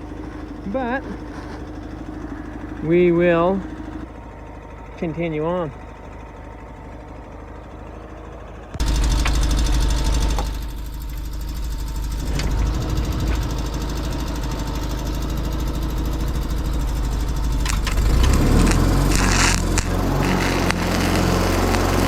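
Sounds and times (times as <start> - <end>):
engine idling: 0.0 - 22.0
burst of hiss: 17.6 - 22.0.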